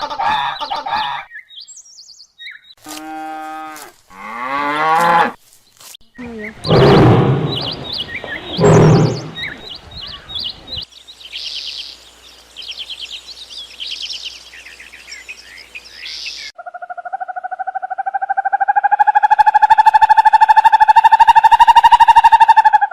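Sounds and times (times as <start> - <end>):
small birds chirping: 0.4 - 2.8, 5.5 - 16.6
cow mooing: 8.6 - 9.4.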